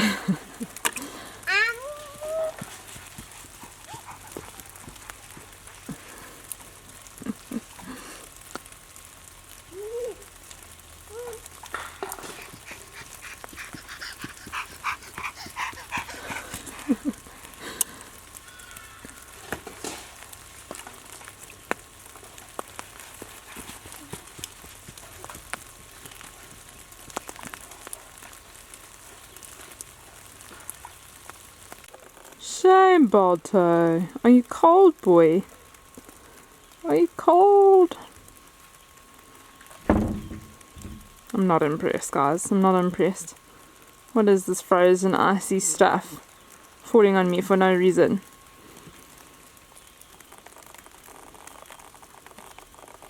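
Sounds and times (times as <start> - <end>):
dog whining: 1.6 - 2.6.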